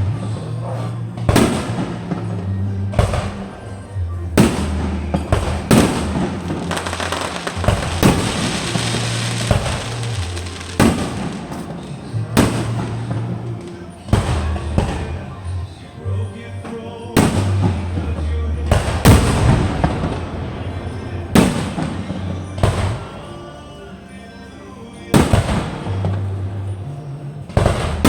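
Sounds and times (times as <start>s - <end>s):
music with heavy bass: 0.0s - 23.5s, 24.8s - 28.0s
fireworks bangs: 0.0s - 24.2s, 24.9s - 28.0s
fireworks crackling: 0.0s - 28.0s.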